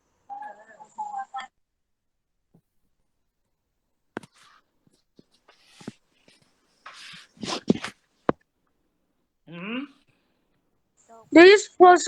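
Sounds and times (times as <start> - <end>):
bursts of rustling: 4.2 - 8.4.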